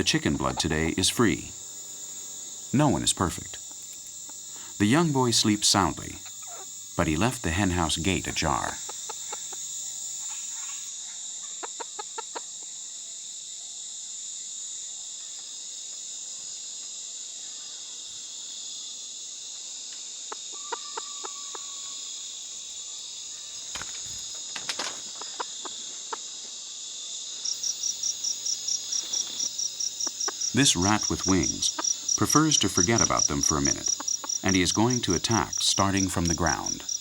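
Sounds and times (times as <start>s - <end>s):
cricket pulsing chirp close by: 0.0s - 37.0s
crickets and insects chorus: 0.0s - 37.0s
chickens clucking softly: 6.1s - 6.7s, 11.4s - 12.7s, 20.3s - 22.0s, 29.0s - 36.8s.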